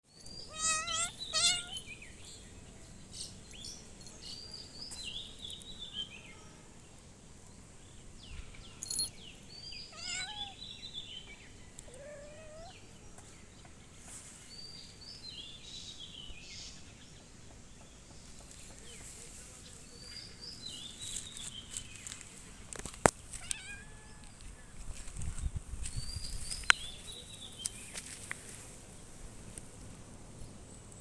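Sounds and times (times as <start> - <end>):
birds chirping: 0.1 - 6.4, 8.2 - 13.8, 14.4 - 28.8
cat meowing: 0.5 - 1.8, 9.9 - 10.6, 11.9 - 12.8, 23.4 - 24.4.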